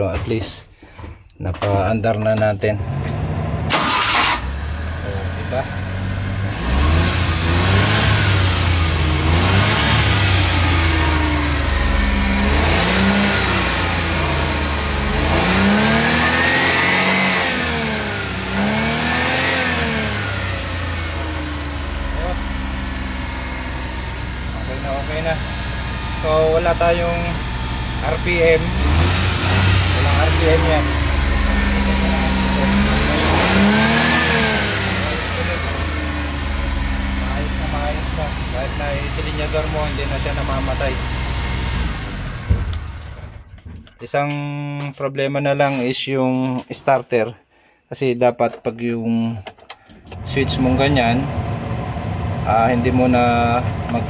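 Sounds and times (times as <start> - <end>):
small petrol engine revving: 2.8 - 43.5, 50.1 - 54.0.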